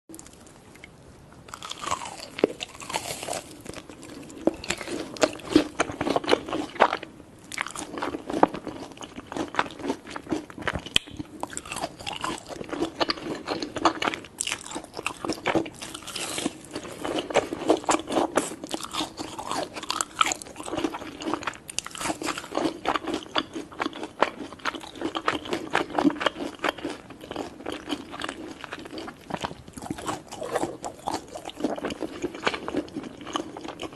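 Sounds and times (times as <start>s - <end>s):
chewing crunchy food: 0.1s - 33.9s.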